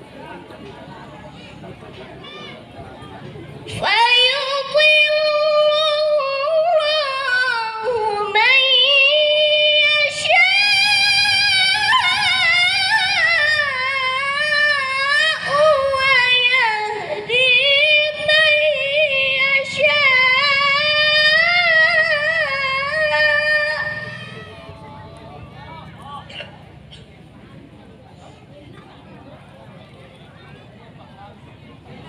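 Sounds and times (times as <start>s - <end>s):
woman reciting melodically: 3.7s - 25.0s.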